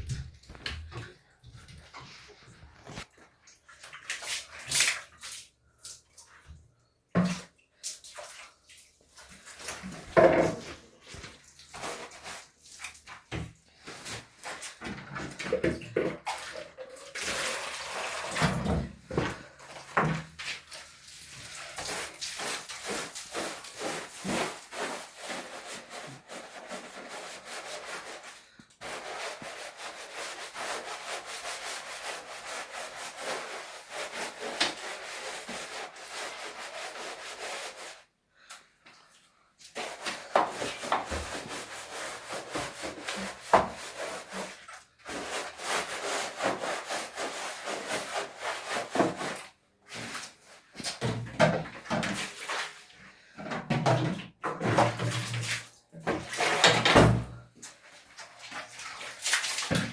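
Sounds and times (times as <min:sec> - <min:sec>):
cloth scrubbing rough surface: 0:21.4 - 0:38.0.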